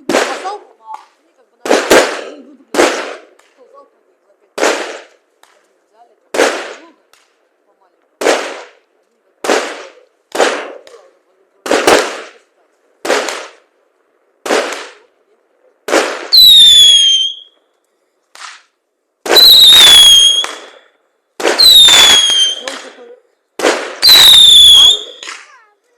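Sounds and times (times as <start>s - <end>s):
firework bangs: 0.0s - 7.5s, 8.1s - 17.6s, 18.2s - 25.8s
whistling firework shots: 15.8s - 17.7s, 18.3s - 25.6s.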